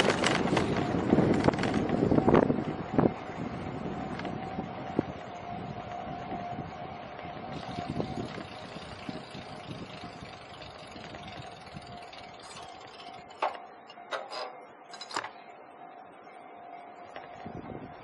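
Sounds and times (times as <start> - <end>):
street traffic rumble: 0.0 - 18.0
two-tone electronic ringing: 7.4 - 18.0.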